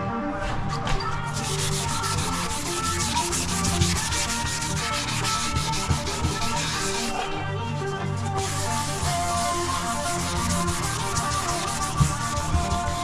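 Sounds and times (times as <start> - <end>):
background music: 0.0 - 13.0
sanding rasp: 1.1 - 13.0.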